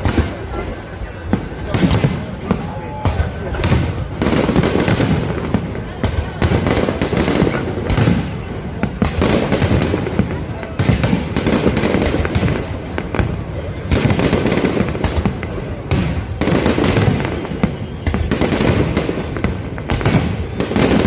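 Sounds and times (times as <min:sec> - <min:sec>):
fireworks bangs and crackles: 0:00.0 - 0:21.0.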